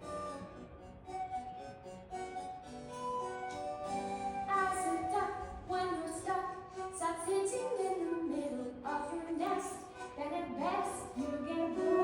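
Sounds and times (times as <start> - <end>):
instrumental accompaniment: 0.0 - 8.2
girl singing: 4.5 - 12.0.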